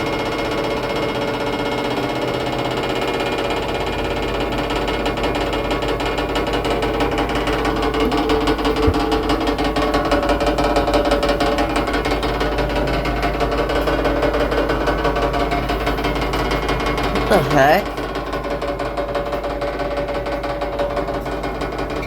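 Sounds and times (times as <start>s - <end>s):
washing machine spinning: 0.0s - 22.0s.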